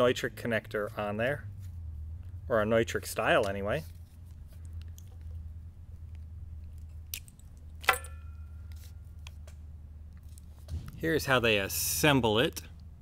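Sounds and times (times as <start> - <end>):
steady low hum: 0.0 - 13.0
connector clicks and handling: 6.0 - 10.5.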